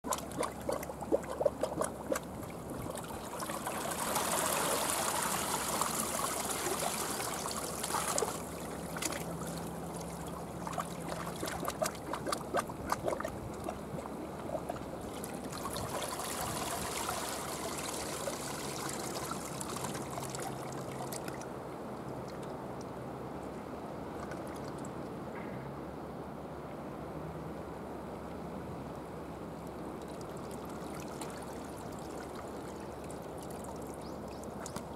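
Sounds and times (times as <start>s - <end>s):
small splashes and clicks: 0.0s - 3.6s, 7.6s - 16.2s, 19.2s - 21.5s, 24.1s - 25.0s, 30.0s - 34.9s
seawater lapping at shore: 0.0s - 25.1s, 29.4s - 34.9s.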